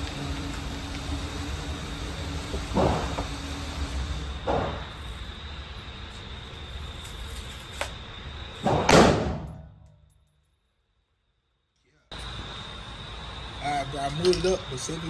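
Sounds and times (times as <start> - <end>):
loud bang: 8.6 - 9.8.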